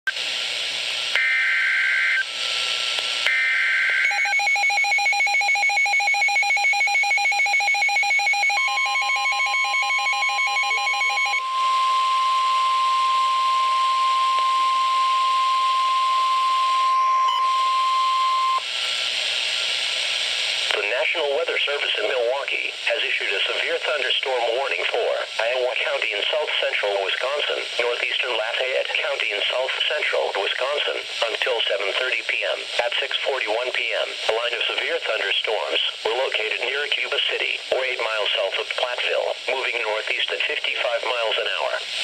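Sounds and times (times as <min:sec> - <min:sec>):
radio hiss: 0:00.1 - 0:04.1, 0:10.0 - 0:42.0
long steady attention tone: 0:03.3 - 0:18.6
rapid electronic alarm beeping: 0:04.1 - 0:11.4.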